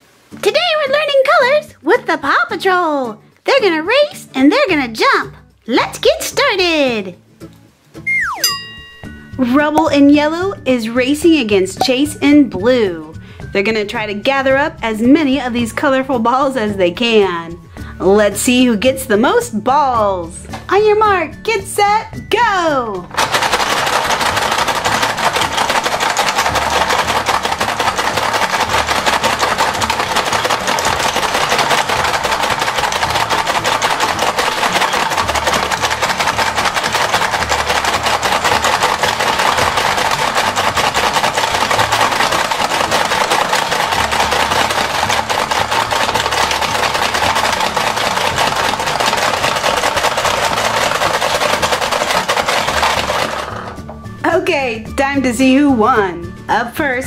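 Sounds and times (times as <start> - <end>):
plastic balls clattering: 23.0 - 54.2.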